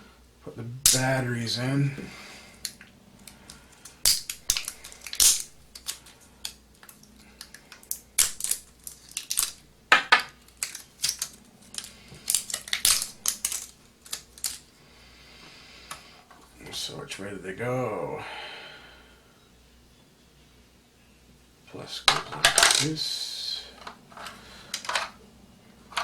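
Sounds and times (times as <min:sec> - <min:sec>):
batteries clicking into plastic compartment: 0:02.6 - 0:14.6, 0:23.8 - 0:25.2.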